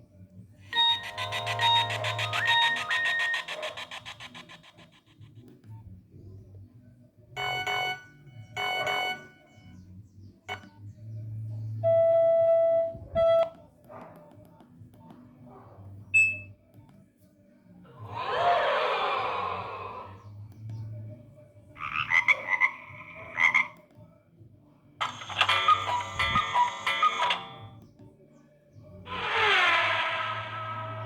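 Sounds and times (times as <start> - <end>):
short electronic phone tones: 0.8 - 3.2.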